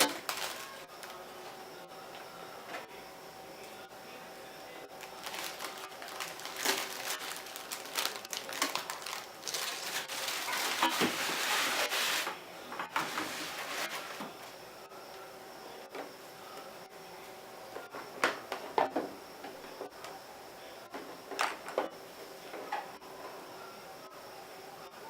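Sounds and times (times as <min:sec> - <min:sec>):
packaging rustling and crinkling: 0:00.0 - 0:01.2, 0:05.0 - 0:12.4, 0:13.0 - 0:14.3.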